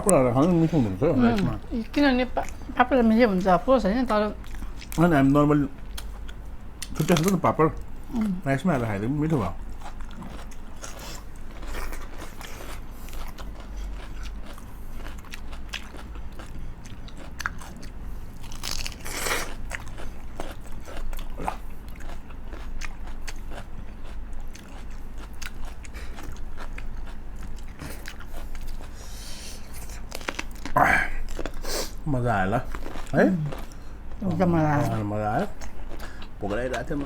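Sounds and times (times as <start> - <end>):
crunchy bites and chewing: 9.7 - 29.0, 29.7 - 31.6.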